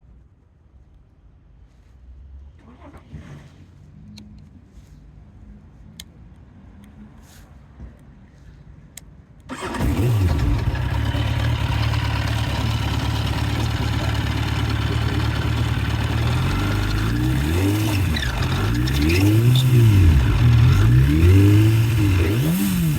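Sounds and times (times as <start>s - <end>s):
motorcycle engine idling and revving: 9.5s - 22.9s.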